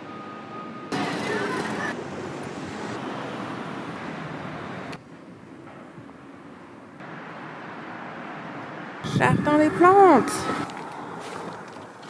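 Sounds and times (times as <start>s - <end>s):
road traffic: 0.0s - 12.0s
wind on microphone: 9.0s - 11.7s.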